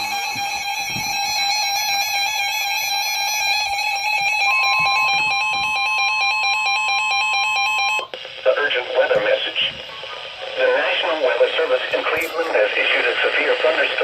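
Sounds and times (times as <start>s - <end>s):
second steady warning tone: 0.0s - 10.0s
steady alarm tone: 0.0s - 14.0s.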